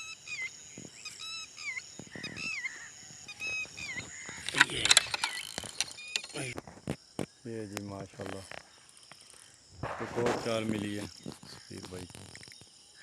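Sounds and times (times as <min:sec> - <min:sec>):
bird calling: 0:00.0 - 0:06.6
high insect whine: 0:00.0 - 0:13.0
loud clicks and rattles: 0:04.2 - 0:06.4.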